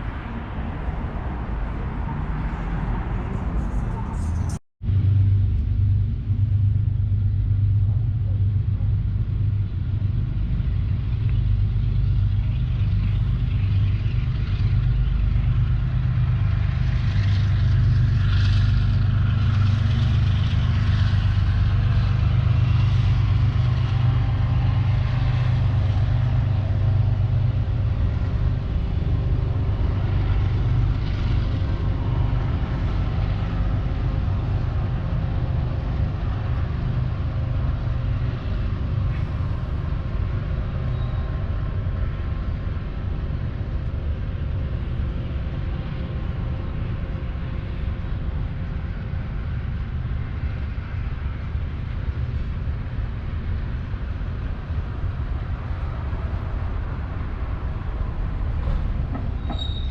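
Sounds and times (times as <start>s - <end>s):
train rumbling past: 0.0s - 59.9s.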